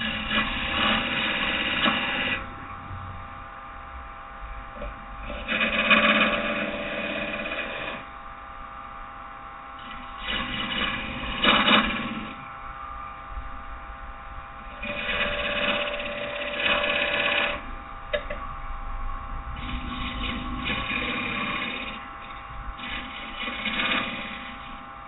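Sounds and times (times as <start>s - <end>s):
tool cutting spinning wood: 0.0s - 2.6s, 4.8s - 8.1s, 9.8s - 12.6s, 14.6s - 18.4s, 19.5s - 25.0s
wood lathe motor running: 0.0s - 2.8s, 4.7s - 8.3s, 9.8s - 13.2s, 14.6s - 18.5s, 19.6s - 25.0s.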